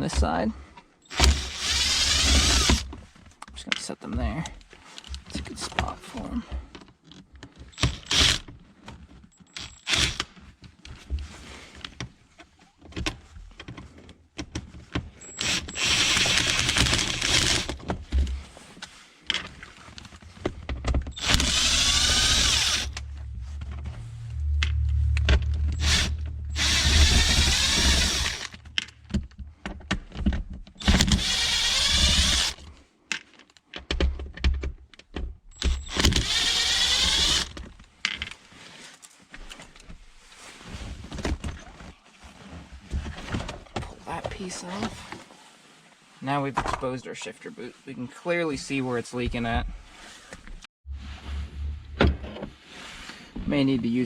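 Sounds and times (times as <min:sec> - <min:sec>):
impact gun running: 0:21.1 - 0:23.0, 0:25.7 - 0:28.6.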